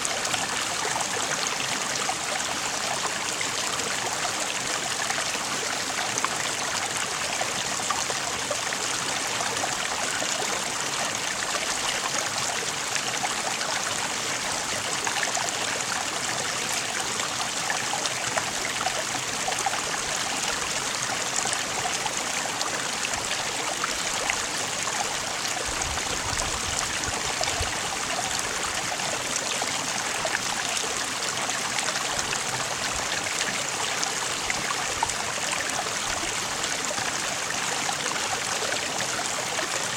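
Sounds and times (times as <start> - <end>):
stream water rushing: 9.8 - 39.9.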